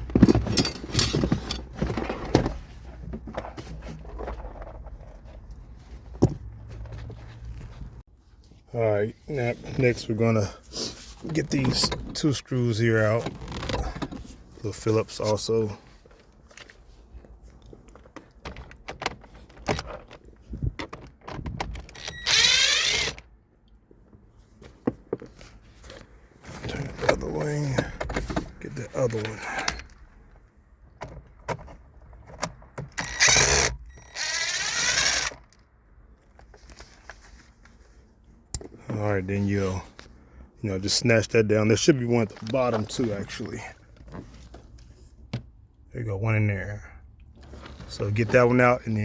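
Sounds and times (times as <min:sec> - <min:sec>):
tools knocking and scraping: 0:00.0 - 0:05.4
cordless screwdriver whirring: 0:22.0 - 0:23.2, 0:33.0 - 0:35.4.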